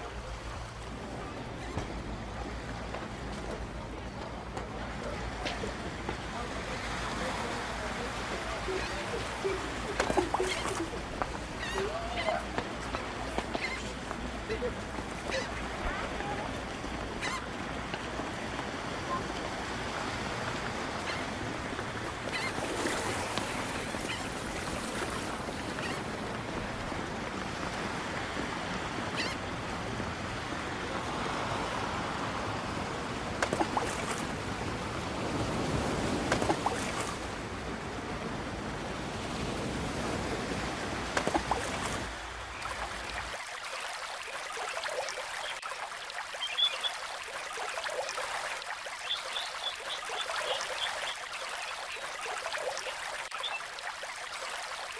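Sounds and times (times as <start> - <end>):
ocean surf washing on shore: 0.0 - 43.4.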